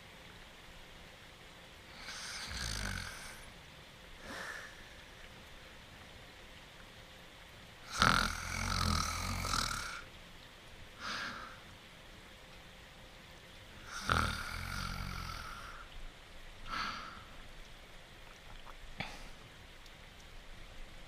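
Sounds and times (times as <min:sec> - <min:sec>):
rain hissing: 0:00.0 - 0:21.0
cartoon dog snoring: 0:07.9 - 0:10.0, 0:13.9 - 0:15.7.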